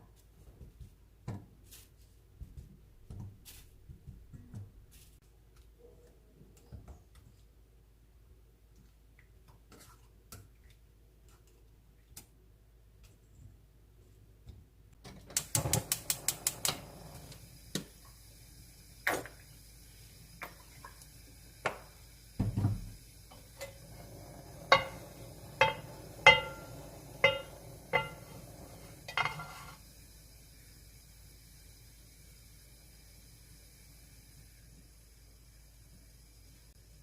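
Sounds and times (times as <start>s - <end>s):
utensil knocking against dish: 24.7s - 28.3s.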